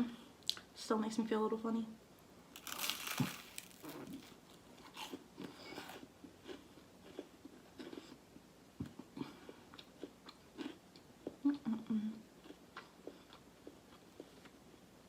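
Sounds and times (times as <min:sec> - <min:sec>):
crunchy bite into bread: 0:02.6 - 0:05.2
chewing with crunches: 0:02.6 - 0:08.2, 0:09.0 - 0:11.5, 0:12.4 - 0:14.6.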